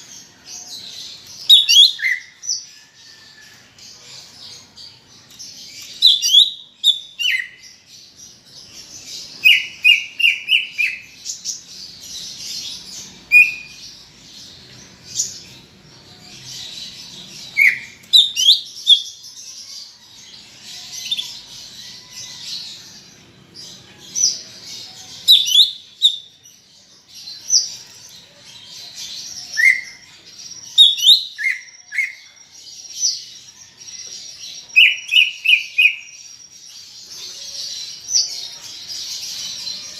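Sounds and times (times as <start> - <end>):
bird singing whistled notes: 1.4 - 2.7, 5.8 - 7.8, 9.3 - 11.4, 12.3 - 13.9, 17.4 - 19.3, 25.2 - 26.4, 29.4 - 37.0.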